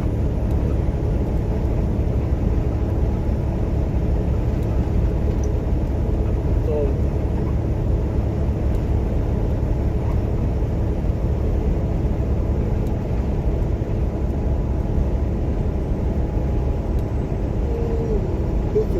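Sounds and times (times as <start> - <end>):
road noise: 0.0 - 18.9
truck engine rumble: 0.0 - 18.9.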